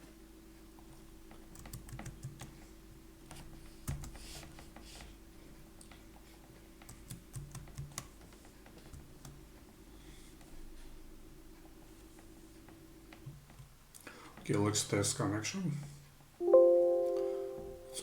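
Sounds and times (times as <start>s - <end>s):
computer keyboard typing: 1.5s - 2.5s, 6.8s - 8.1s.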